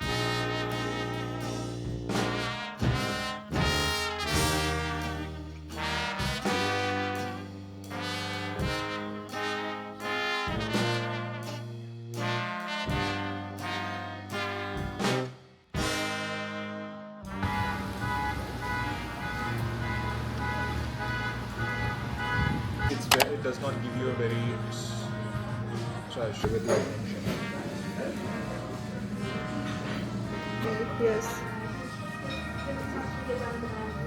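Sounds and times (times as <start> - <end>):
sustained bass notes: 0.0 - 15.2, 15.8 - 26.3
jazz brass music: 0.0 - 34.0.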